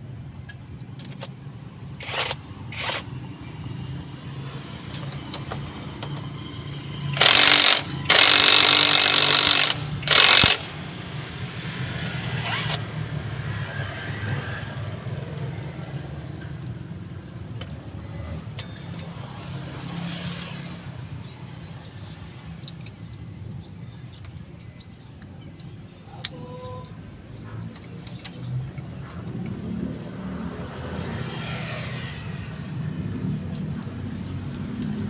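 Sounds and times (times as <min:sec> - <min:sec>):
power tool running: 0:02.0 - 0:03.1, 0:07.1 - 0:11.1, 0:12.2 - 0:13.0.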